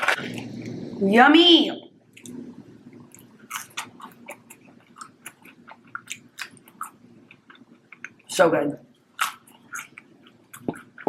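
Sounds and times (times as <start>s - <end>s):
person chewing crunchy fries: 2.1s - 8.3s, 9.0s - 11.0s.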